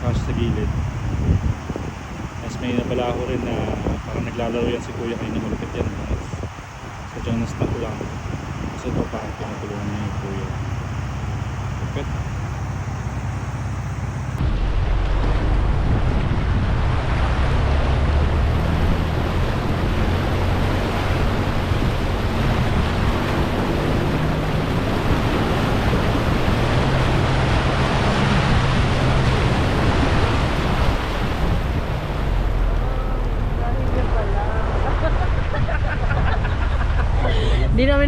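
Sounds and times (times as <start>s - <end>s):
engine running low: 0.0s - 38.0s
rush of water: 0.0s - 38.0s.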